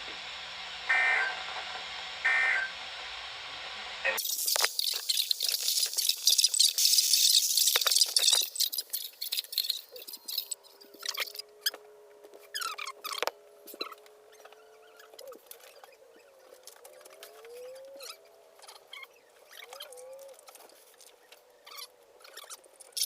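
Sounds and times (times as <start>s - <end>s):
faint wavering steady tones: 0.0s - 5.0s, 7.6s - 23.0s
radio static hissing and crackling: 0.0s - 17.5s
scattered clicks: 4.1s - 11.4s.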